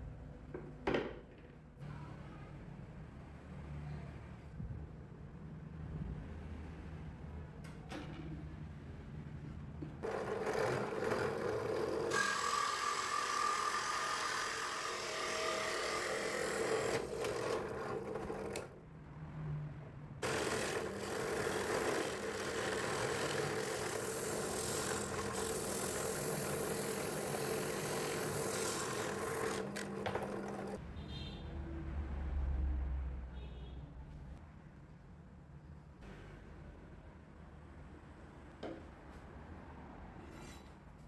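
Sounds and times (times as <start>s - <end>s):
drum sander whirring: 10.0s - 18.7s, 20.2s - 30.8s.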